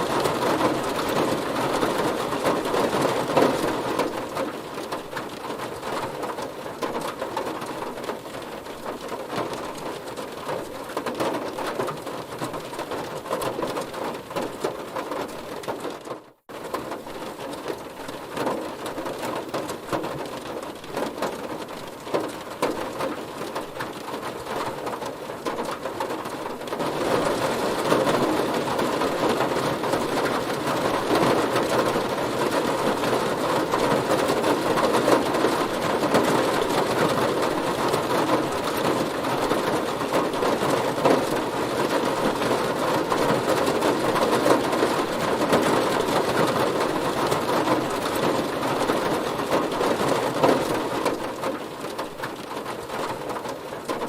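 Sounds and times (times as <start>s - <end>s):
heavy rain on a car: 0.0s - 54.0s.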